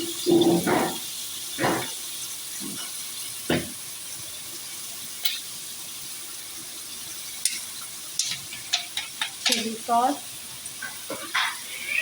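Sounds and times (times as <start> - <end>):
utensils knocking against pan: 0.0 - 1.0, 7.4 - 9.9
food sizzling in a frying pan: 0.0 - 12.0.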